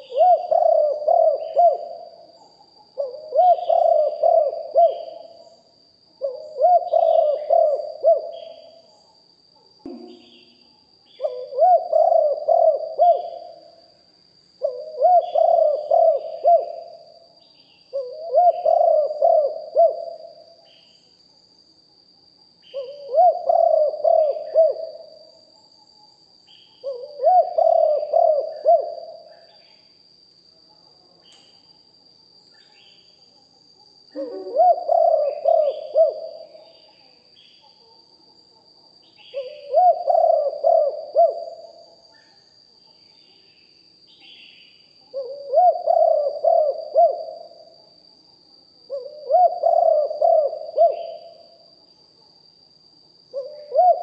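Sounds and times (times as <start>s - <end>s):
dove cooing: 0.0s - 5.5s, 6.2s - 8.8s, 11.2s - 13.8s, 14.6s - 17.1s, 17.9s - 20.4s, 22.7s - 25.2s, 26.8s - 29.3s, 34.1s - 37.1s, 39.2s - 41.9s, 45.1s - 47.7s, 48.9s - 51.5s, 53.3s - 54.0s
small high chirps: 0.0s - 21.2s.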